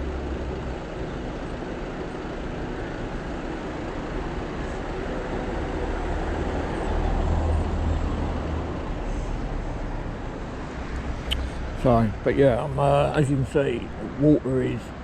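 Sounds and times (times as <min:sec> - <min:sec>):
road traffic noise: 0:00.0 - 0:15.0
vehicle low rumble: 0:00.0 - 0:15.0.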